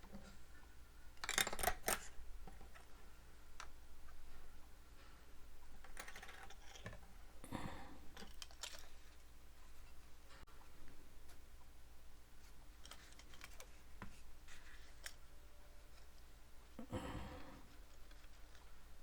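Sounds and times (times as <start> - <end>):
handling clicks and rustles: 8.1 - 11.5, 12.4 - 16.3, 17.6 - 19.0.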